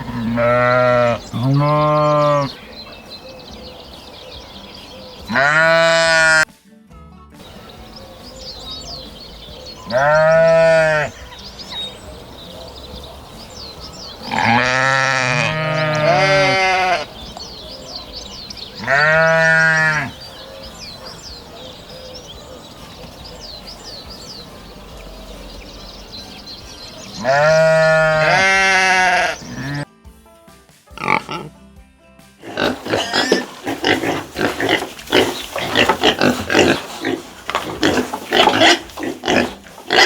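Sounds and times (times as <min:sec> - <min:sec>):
sheep bleating: 0:00.0 - 0:02.7, 0:05.3 - 0:06.5, 0:09.9 - 0:11.2, 0:14.2 - 0:17.2, 0:18.8 - 0:20.2, 0:27.2 - 0:29.9, 0:32.4 - 0:40.0
small birds chirping: 0:00.0 - 0:06.0, 0:07.4 - 0:29.8, 0:32.4 - 0:40.0.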